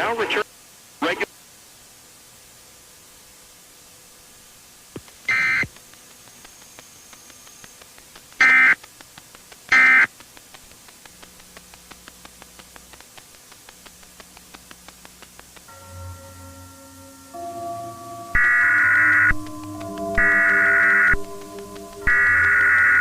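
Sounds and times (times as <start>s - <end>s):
faint ticking: 5.0s - 23.0s
digital data tone bursts: 5.3s - 5.7s, 8.4s - 8.8s, 9.7s - 10.1s, 17.8s - 23.0s.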